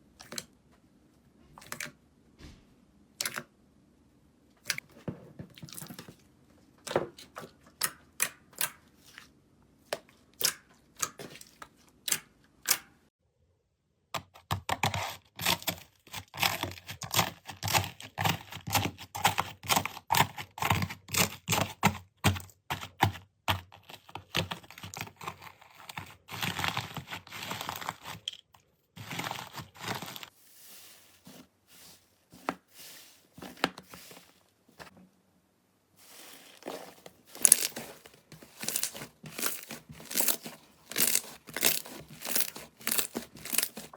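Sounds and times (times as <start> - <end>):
slime clicking and crackling: 38.5 - 43.9.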